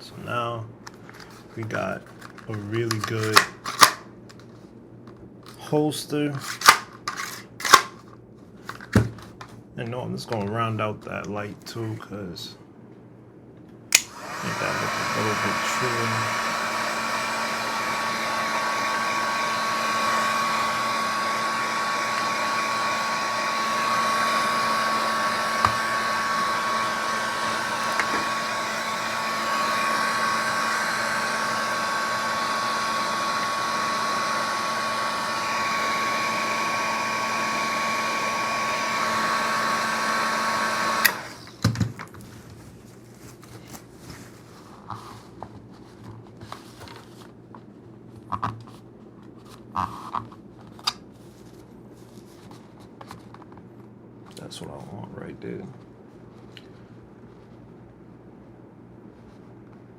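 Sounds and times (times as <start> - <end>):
electric tool motor whining: 14.0 - 41.5.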